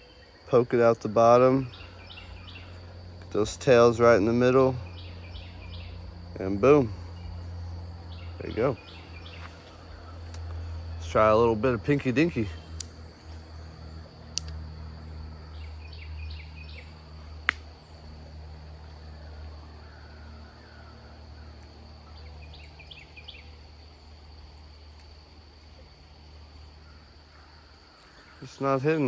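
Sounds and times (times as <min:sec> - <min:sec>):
bird chirping: 0:00.0 - 0:18.4, 0:19.2 - 0:24.1
high insect drone: 0:00.0 - 0:29.0
sharp clicks: 0:12.7 - 0:13.5, 0:14.3 - 0:14.6.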